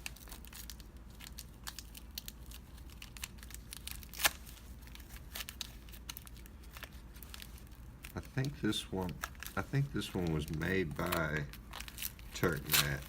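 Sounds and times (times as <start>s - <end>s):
packaging crinkling: 0.0s - 13.0s.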